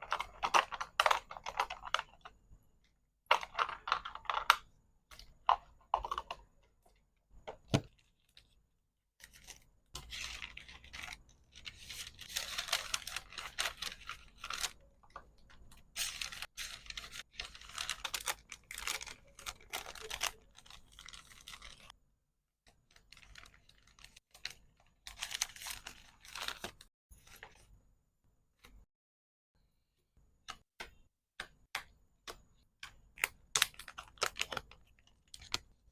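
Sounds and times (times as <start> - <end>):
packaging clicks and taps: 3.3 - 6.5
wrapping crinkling and tearing: 9.2 - 15.2, 15.8 - 21.9, 22.9 - 26.8.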